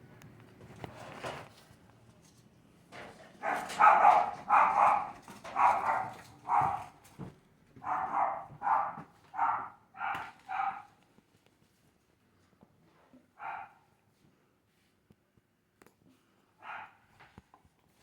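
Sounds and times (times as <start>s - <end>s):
dog barking: 3.4s - 7.0s, 7.8s - 10.9s, 13.4s - 13.9s, 16.6s - 17.1s.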